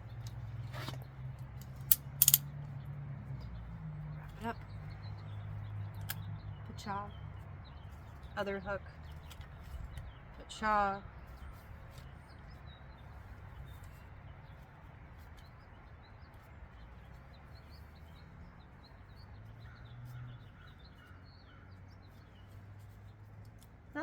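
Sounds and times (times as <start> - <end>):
faint birds chirping: 0.0 - 24.0
light clicks: 1.6 - 2.4.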